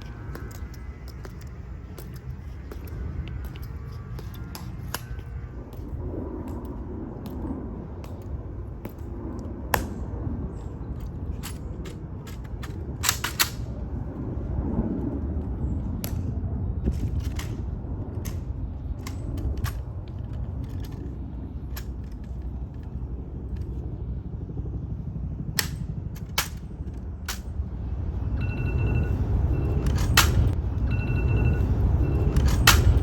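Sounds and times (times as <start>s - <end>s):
low steady rumble: 0.0s - 33.0s
smartphone alarm beeping: 28.4s - 29.8s, 30.8s - 32.4s.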